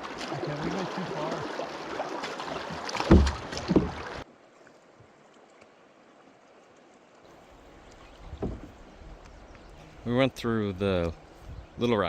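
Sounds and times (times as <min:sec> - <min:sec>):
paddle splashes and knocks: 0:00.0 - 0:04.2, 0:07.6 - 0:09.3
water rushing through rapids: 0:00.0 - 0:04.3
faint hiss of calm water: 0:00.0 - 0:12.0.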